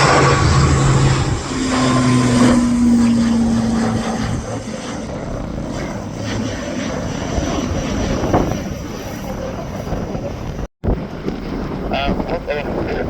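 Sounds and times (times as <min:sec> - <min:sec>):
jet engines roaring with whine: 0:00.0 - 0:13.0
wind on microphone: 0:00.0 - 0:13.0.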